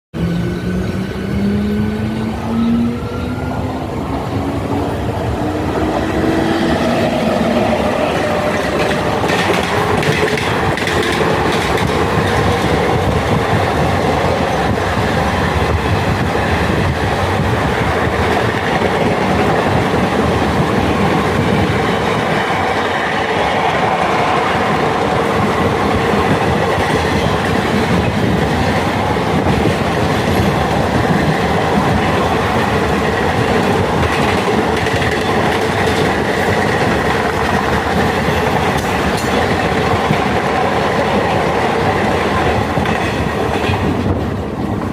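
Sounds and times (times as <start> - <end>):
train coach rumbling: 0.1 - 44.9
wheels clacking over rail joints: 6.2 - 16.9, 25.5 - 44.4.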